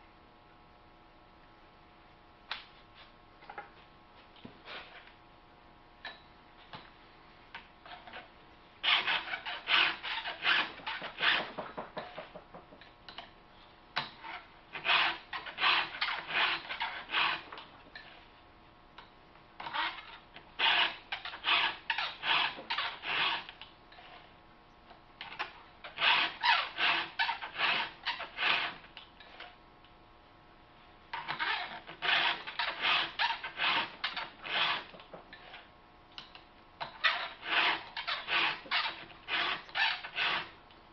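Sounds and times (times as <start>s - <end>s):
file rasping on chainsaw chain: 8.8s - 12.2s, 14.3s - 18.1s, 19.6s - 24.2s, 25.9s - 28.8s, 31.3s - 34.9s, 37.0s - 40.6s.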